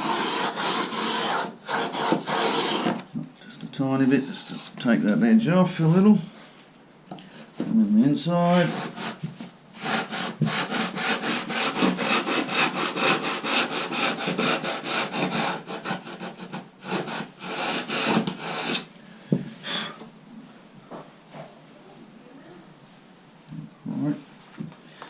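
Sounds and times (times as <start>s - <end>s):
hand sander rasping: 0.0s - 3.0s, 8.5s - 9.2s, 9.8s - 18.9s.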